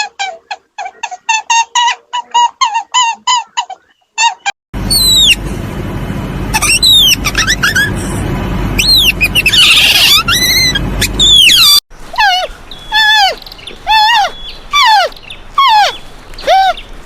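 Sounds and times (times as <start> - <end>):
bird squealing calls: 0.2 - 5.4, 8.8 - 16.9
steady low rumble: 4.8 - 11.3.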